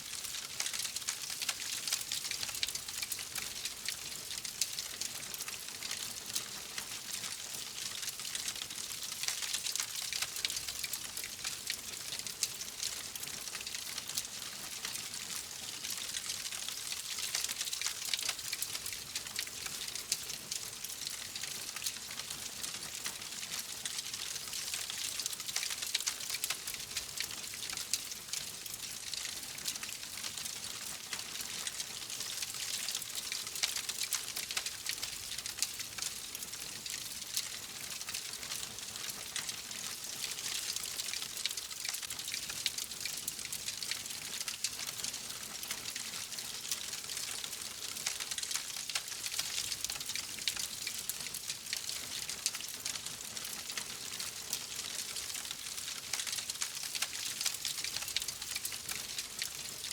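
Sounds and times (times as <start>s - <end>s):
wood fire crackling: 40.2s - 59.5s.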